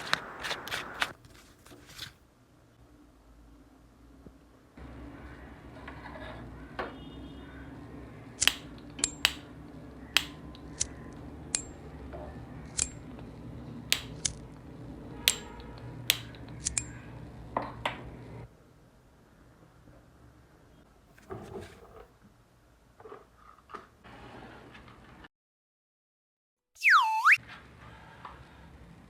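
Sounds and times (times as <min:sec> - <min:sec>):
steady low hum: 0:04.8 - 0:18.5
gas stove igniter clicking: 0:08.4 - 0:09.5, 0:10.1 - 0:11.7, 0:15.3 - 0:17.0.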